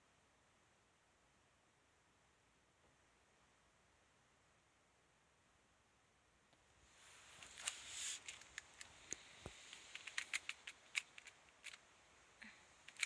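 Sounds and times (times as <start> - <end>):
soft rustling: 6.6 - 13.0
small sharp clicks: 7.4 - 11.8.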